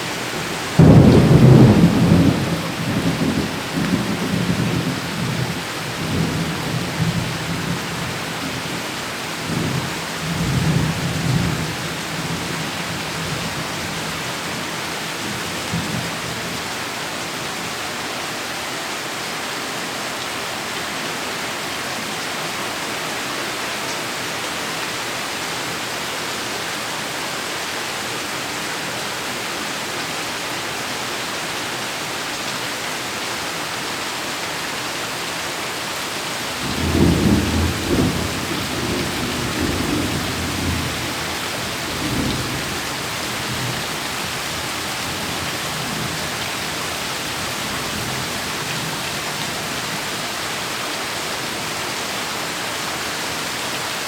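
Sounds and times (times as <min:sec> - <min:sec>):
heavy rain falling: 0:00.0 - 0:54.0
rolling thunder: 0:00.6 - 0:12.4, 0:36.5 - 0:48.3.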